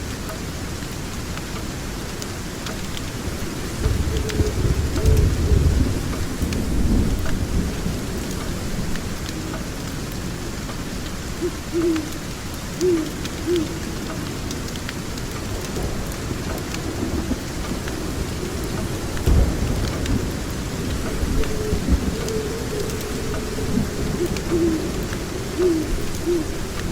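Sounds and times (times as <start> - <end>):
steady rain: 0.0 - 26.9
thunder rolling: 3.4 - 9.0, 15.5 - 26.9
low hoots: 11.3 - 14.1, 21.2 - 26.9.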